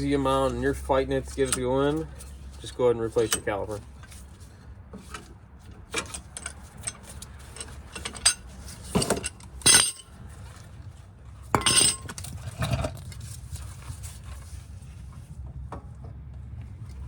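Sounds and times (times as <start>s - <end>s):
metal tools clinking: 0.0s - 4.2s, 5.9s - 10.2s, 11.5s - 12.9s
metallic knocks: 8.9s - 10.0s, 11.6s - 12.2s.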